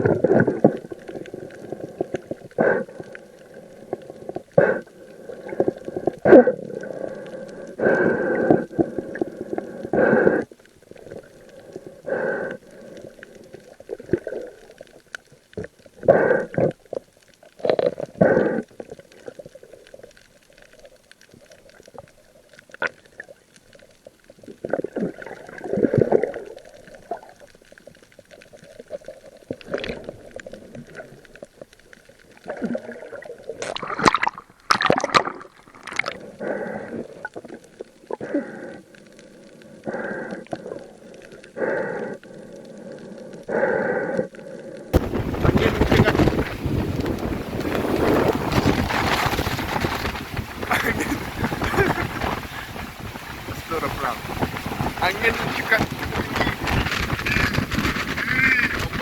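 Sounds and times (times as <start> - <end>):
muffled water sloshing underwater: 0.0 - 59.0.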